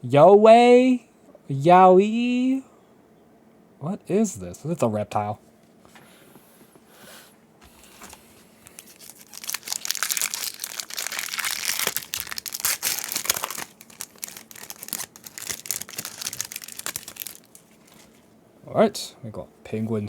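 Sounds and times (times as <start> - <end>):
foil wrapper crinkling: 7.8 - 18.3.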